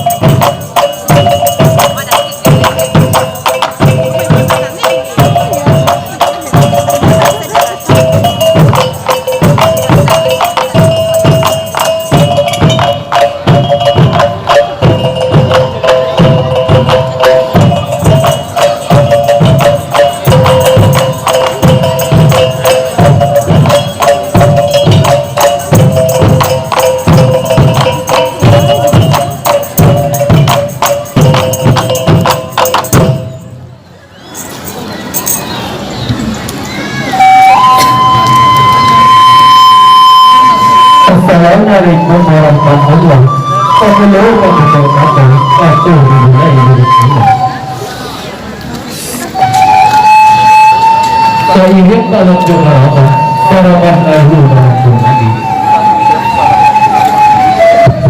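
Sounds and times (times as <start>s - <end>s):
fast tambourine and drum strokes: 0.0s - 33.6s
melody of held notes: 0.0s - 33.8s, 36.9s - 48.5s, 49.2s - 58.0s.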